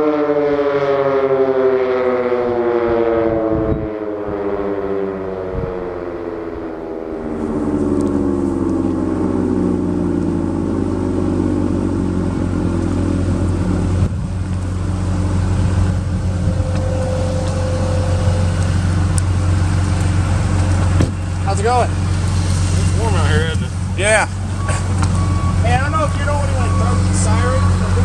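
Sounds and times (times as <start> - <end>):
rotating siren winding down: 0.0 - 14.0, 15.6 - 19.6, 24.6 - 28.0.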